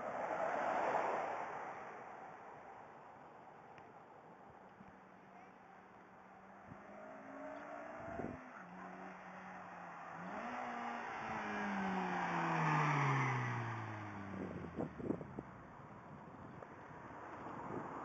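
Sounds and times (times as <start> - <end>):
tyre and road noise: 0.0 - 18.0
car exhaust accelerating past: 6.7 - 15.3.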